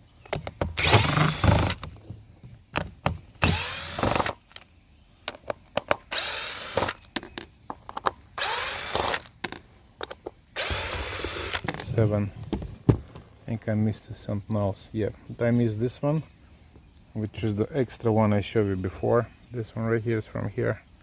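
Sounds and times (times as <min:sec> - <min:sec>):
cordless drill backing out screws: 0:00.3 - 0:02.2, 0:02.8 - 0:04.7, 0:05.3 - 0:13.3.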